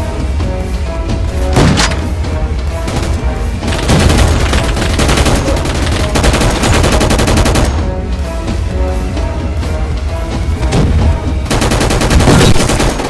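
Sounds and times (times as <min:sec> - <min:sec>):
rapid crackling: 0:02.9 - 0:07.8.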